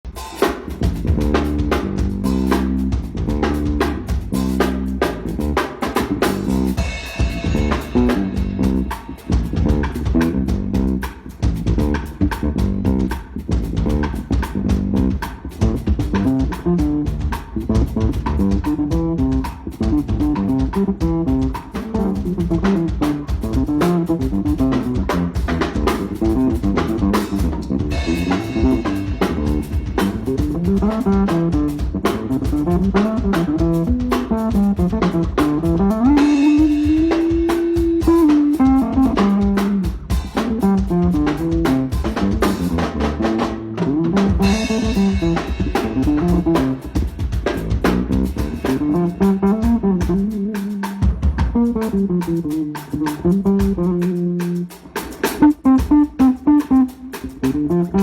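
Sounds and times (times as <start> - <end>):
drum kit beat: 0.0 - 58.0
bass guitar line: 0.7 - 58.0
guitar: 19.2 - 39.8.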